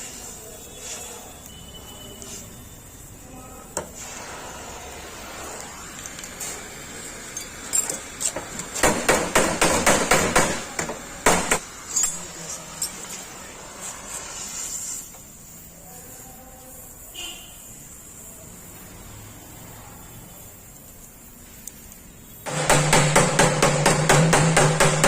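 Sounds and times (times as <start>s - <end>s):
hammer striking sheet metal: 8.8s - 11.6s, 22.5s - 25.0s.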